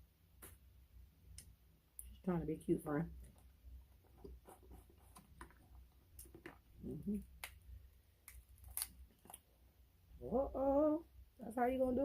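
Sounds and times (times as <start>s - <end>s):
crab shell cracking: 7.3s - 9.5s.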